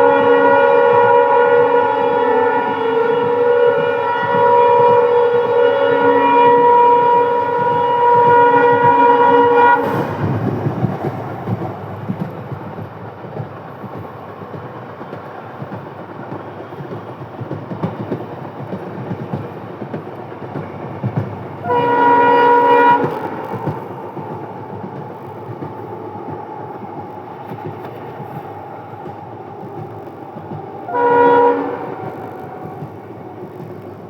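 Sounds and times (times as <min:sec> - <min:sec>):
locomotive air horn blast: 0:00.0 - 0:10.4, 0:21.6 - 0:23.8, 0:30.9 - 0:32.8
train rumble and wheel clatter: 0:00.0 - 0:34.0.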